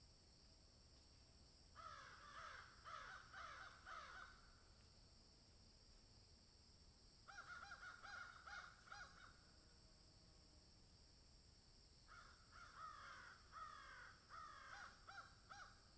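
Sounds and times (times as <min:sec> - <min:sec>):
crows cawing: 0:01.8 - 0:04.4, 0:07.3 - 0:09.4, 0:12.1 - 0:15.8.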